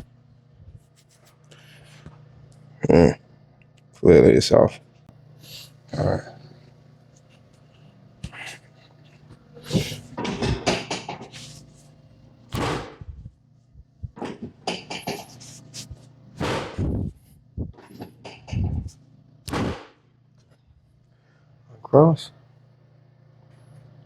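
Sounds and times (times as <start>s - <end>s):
rustling on padded table: 11.2s - 12.0s, 15.1s - 16.2s
short scuffs and knocks: 12.5s - 13.1s, 15.4s - 17.1s, 19.5s - 19.9s.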